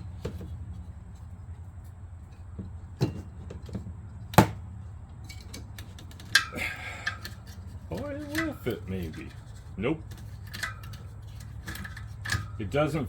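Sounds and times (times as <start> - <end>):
steady low hum: 0.0 - 13.0
metal clacks of bicycle wheel: 5.2 - 13.0.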